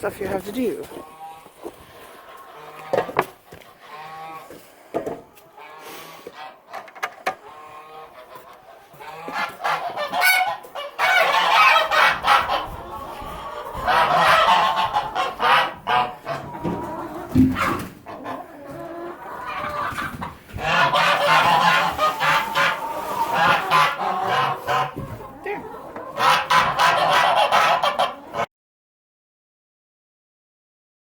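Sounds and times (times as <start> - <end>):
poultry honking: 3.8 - 4.5, 7.4 - 28.5.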